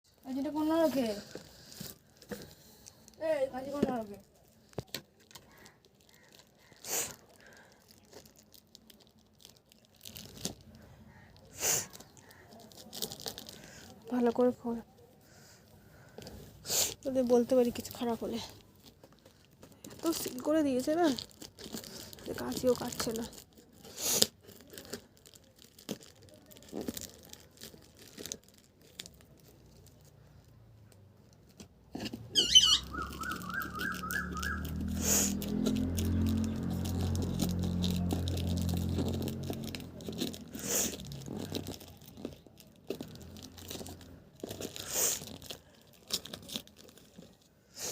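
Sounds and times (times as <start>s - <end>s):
packaging wrapping rustling and tearing: 0.1s - 14.8s, 15.6s - 47.9s
chirpy electronic melody: 32.4s - 34.8s.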